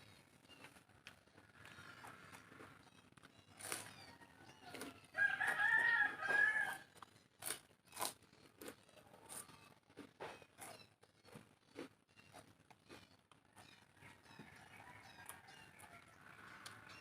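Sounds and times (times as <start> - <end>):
person chewing: 0.4 - 4.1, 4.7 - 13.5
rooster crowing: 3.7 - 6.9, 13.9 - 16.9.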